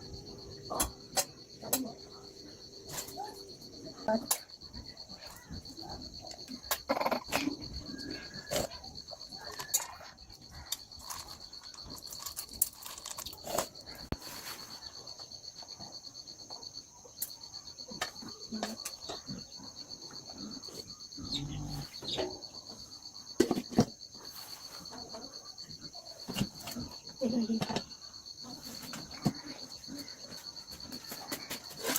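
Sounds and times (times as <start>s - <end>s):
insects trilling: 0.0s - 31.9s.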